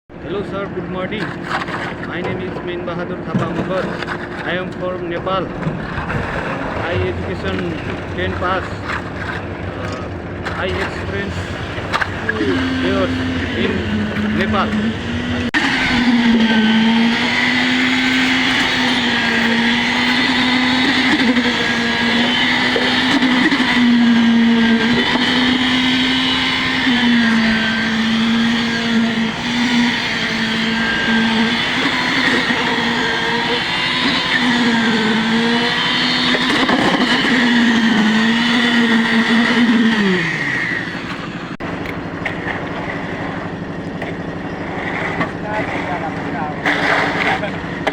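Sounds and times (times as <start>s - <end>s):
motor running at high pitch: 6.8s - 47.9s.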